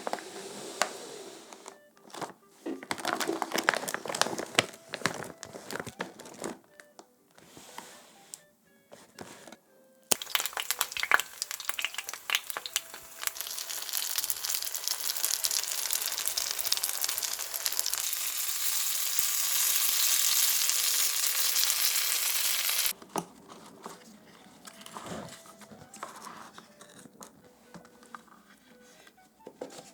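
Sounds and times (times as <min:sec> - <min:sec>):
dumplings sizzling in hot oil: 0:10.1 - 0:22.9.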